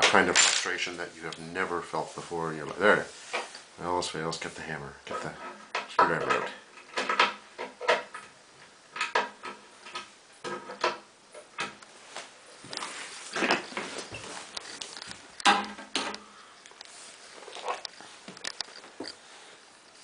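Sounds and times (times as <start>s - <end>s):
knocks and clinks of bed parts: 5.1s - 8.4s, 12.7s - 16.3s.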